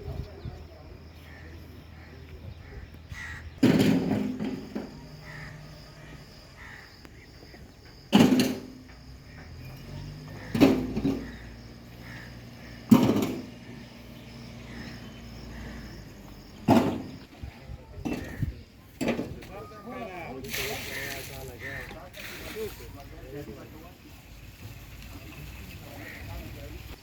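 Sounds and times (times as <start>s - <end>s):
steady low hum: 0.0s - 19.0s
loud sharp knocks: 3.6s - 5.4s, 8.1s - 9.1s, 10.4s - 11.4s, 12.9s - 13.7s, 16.6s - 17.2s.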